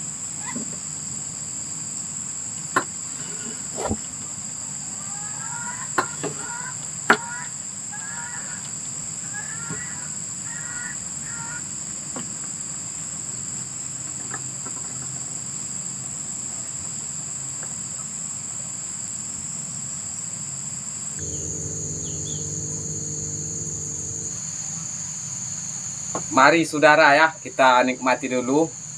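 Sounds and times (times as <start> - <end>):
crickets and insects chirring: 0.0 - 28.9
low hum: 21.2 - 24.4.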